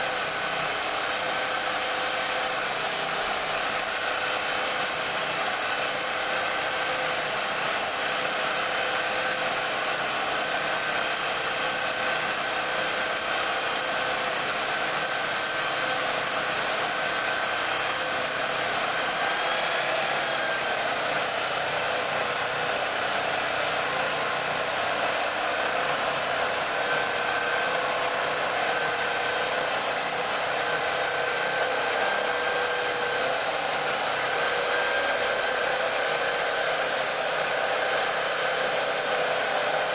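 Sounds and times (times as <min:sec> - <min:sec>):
drill motor whine: 0:00.0 - 0:39.9.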